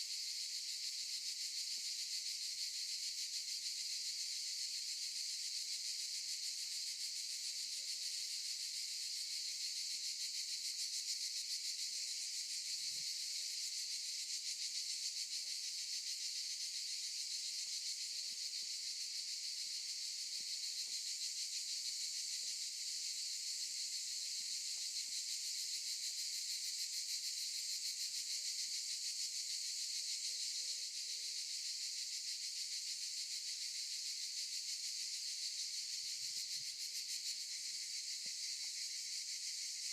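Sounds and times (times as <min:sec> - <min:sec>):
cicadas buzzing: 0:08.8 - 0:39.9.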